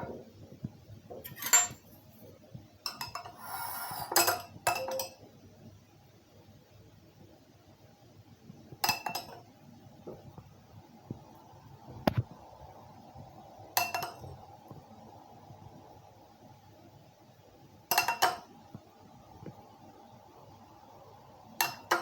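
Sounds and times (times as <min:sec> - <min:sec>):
metal spoon clinking against glass: 0:01.2 - 0:01.8.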